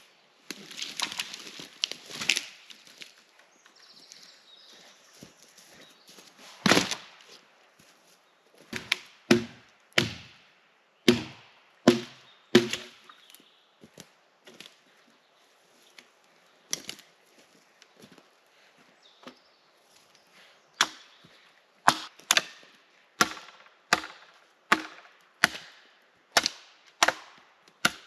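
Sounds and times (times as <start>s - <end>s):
axe chopping wood: 6.6s - 7.1s, 8.7s - 10.4s, 11.1s - 13.1s, 20.8s - 21.1s, 21.8s - 28.0s.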